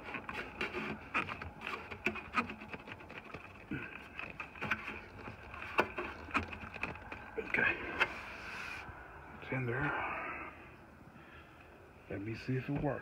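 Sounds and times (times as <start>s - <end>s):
faint steady hum: 3.2s - 13.0s.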